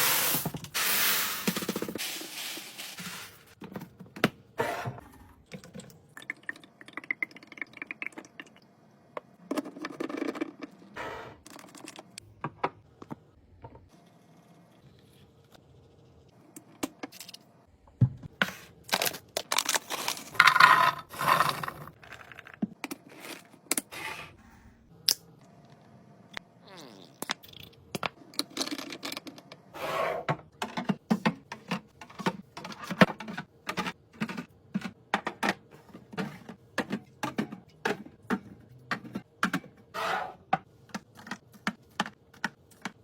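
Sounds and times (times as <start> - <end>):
scraping and rustling packaging: 0.8 - 3.6.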